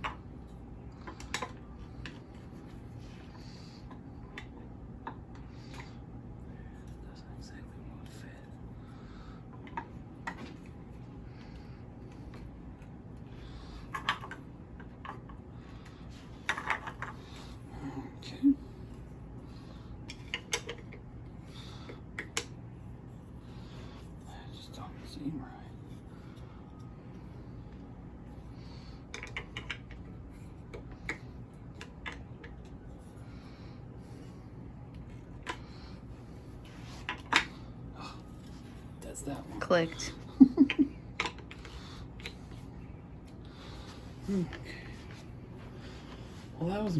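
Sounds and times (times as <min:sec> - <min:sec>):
low steady hum: 0:00.0 - 0:46.9.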